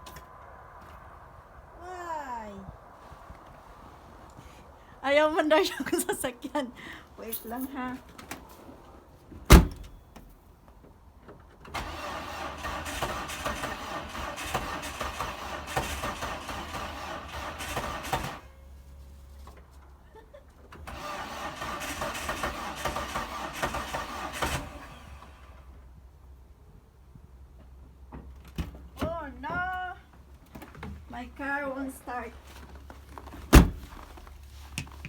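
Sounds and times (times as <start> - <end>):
car engine cranking: 11.7 - 18.6, 20.7 - 25.6
loud thump: 33.5 - 33.9.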